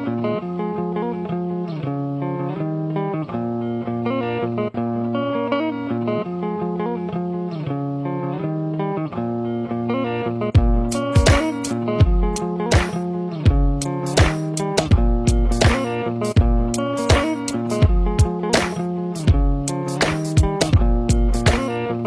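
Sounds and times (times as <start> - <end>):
plucked guitar music: 0.0 - 22.0.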